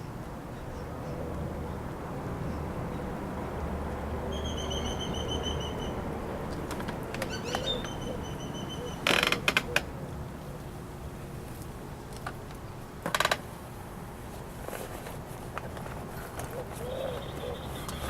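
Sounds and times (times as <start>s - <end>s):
bird trilling and chirping: 4.3s - 6.0s, 7.2s - 9.3s.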